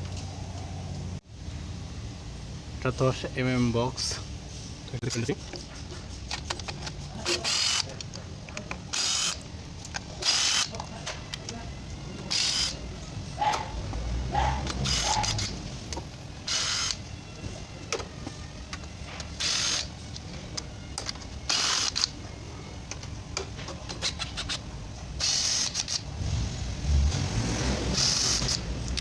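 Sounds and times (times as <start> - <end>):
ratchet wrench clicking: 6.3 - 7.9, 8.6 - 10.8, 12.3 - 12.8, 14.6 - 15.6, 20.6 - 22.2, 25.2 - 26.1, 27.9 - 29.0.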